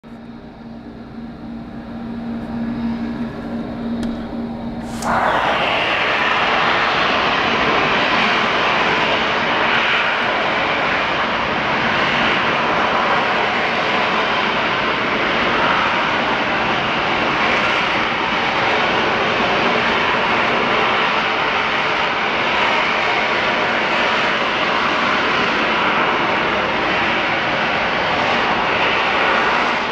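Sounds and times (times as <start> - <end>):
loud steady rushing noise: 2.1 - 17.7.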